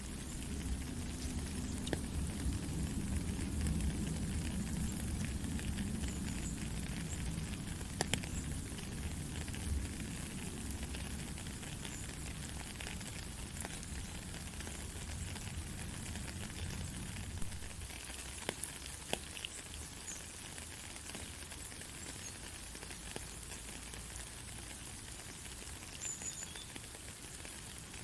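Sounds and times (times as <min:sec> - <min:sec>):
heavy rain hissing: 0:00.0 - 0:28.0
sharp raindrop impacts: 0:00.0 - 0:28.0
low thunder rumble: 0:00.4 - 0:10.8.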